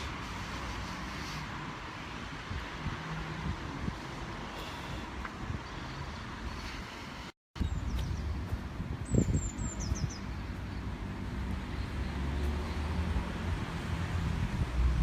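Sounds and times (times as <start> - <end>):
wind buffeting microphone: 1.5 - 15.0
bird chirping: 9.0 - 10.8.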